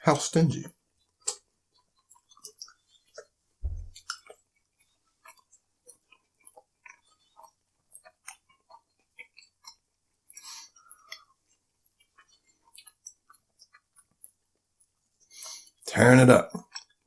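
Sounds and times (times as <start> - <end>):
chewing and wet mouth sounds: 1.0 - 15.8, 16.5 - 17.0
dull low thump: 3.6 - 4.0.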